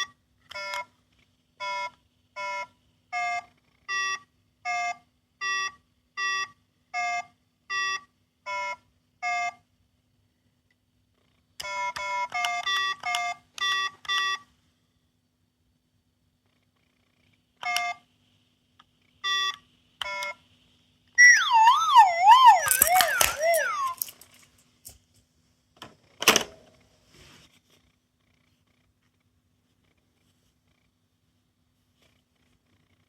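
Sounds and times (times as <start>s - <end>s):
electronic toy beeping notes: 21.2s - 24.2s.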